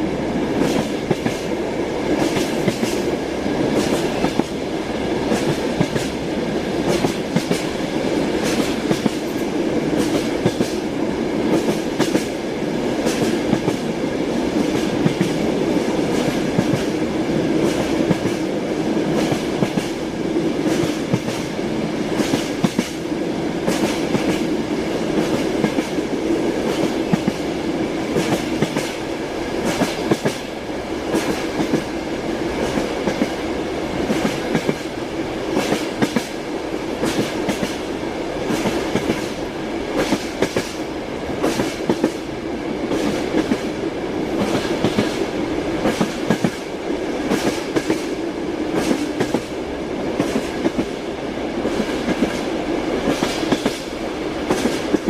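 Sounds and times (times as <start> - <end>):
train running rumble: 0.0 - 55.0
train wheels clacking over rail joints: 0.6 - 1.5, 2.1 - 3.1, 3.7 - 4.6, 5.3 - 6.2, 6.8 - 7.8, 8.4 - 10.8, 11.5 - 12.4, 13.0 - 13.9, 16.1 - 17.0, 19.1 - 20.0, 20.6 - 21.5, 22.2 - 23.0, 23.6 - 24.5, 28.1 - 29.0, 29.6 - 30.5, 31.1 - 31.9, 34.0 - 34.9, 35.5 - 36.4, 37.0 - 40.8, 41.4 - 42.3, 44.3 - 49.6, 51.6 - 55.0.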